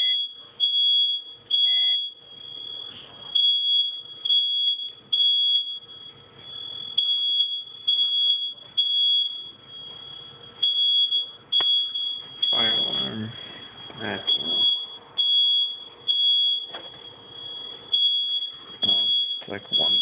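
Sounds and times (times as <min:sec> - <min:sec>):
fire alarm high-pitched tone: 0:00.0 - 0:20.0.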